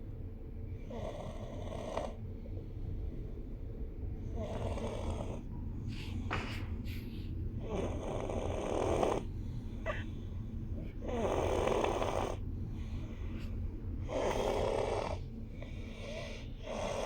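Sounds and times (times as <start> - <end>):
steady low rumble: 0.0 - 17.0
rasping snores: 0.9 - 2.2, 4.4 - 5.4, 7.6 - 9.3, 11.0 - 12.4, 14.0 - 15.3, 16.0 - 17.0.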